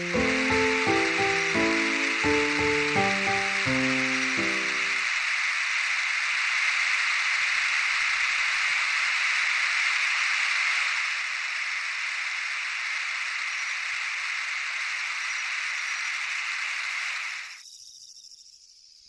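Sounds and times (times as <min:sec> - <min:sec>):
insects chirring: 0:00.0 - 0:05.1, 0:12.4 - 0:19.0.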